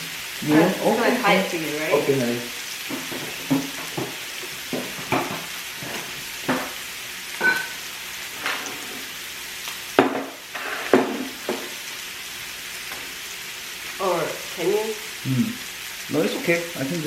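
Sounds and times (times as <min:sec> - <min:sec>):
meat sizzling on a grill: 0:00.0 - 0:17.0
utensils clacking: 0:07.4 - 0:07.8.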